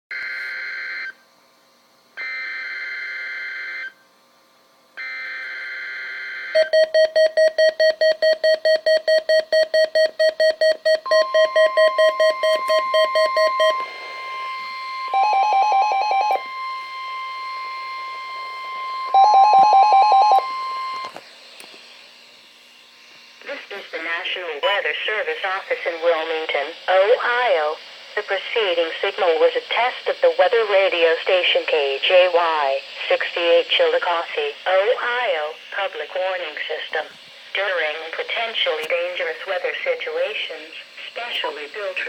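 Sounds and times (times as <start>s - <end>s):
steady warning alarm tone: 0.1s - 1.2s, 2.2s - 4.0s, 5.0s - 21.2s, 23.3s - 42.0s
rapid electronic beeping: 6.6s - 21.1s.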